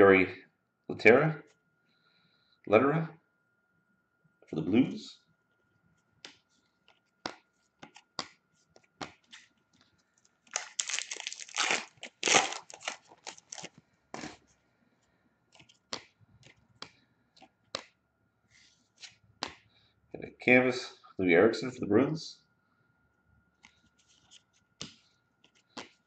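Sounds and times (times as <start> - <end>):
foil wrapper crinkling: 10.4 - 13.8.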